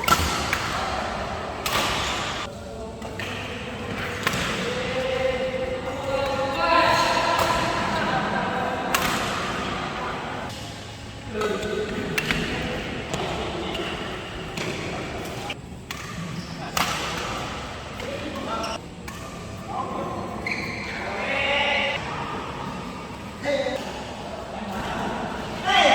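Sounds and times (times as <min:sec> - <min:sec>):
racket hitting shuttlecock: 0:00.0 - 0:19.6
voices chattering: 0:00.6 - 0:25.9.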